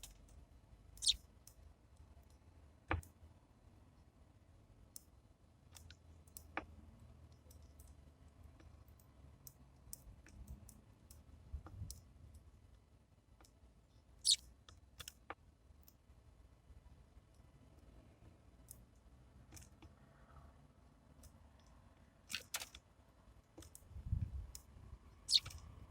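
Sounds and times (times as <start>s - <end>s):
birds pecking seed: 1.0s - 1.2s, 25.3s - 25.7s.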